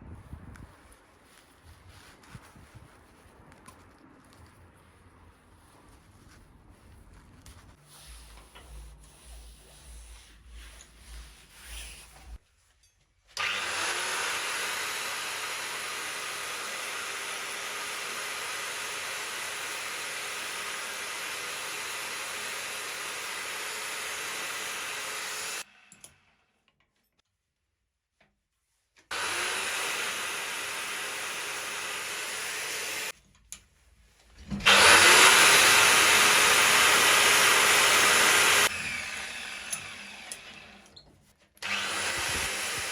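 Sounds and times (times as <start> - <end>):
rubbing and handling noise: 0.1 - 13.4
power tool on metal: 13.4 - 25.7, 29.1 - 33.1, 34.6 - 41.0, 41.6 - 42.9.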